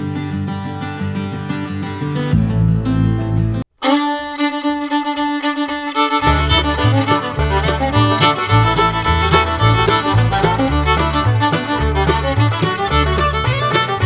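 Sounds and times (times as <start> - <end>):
instrumental background music: 6.2 - 14.0.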